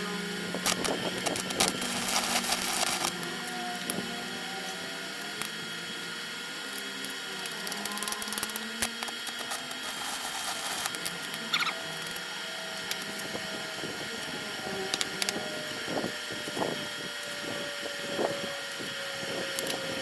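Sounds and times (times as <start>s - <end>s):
electric motor humming: 0.0s - 20.0s
coconut scraping against blade: 7.6s - 12.1s.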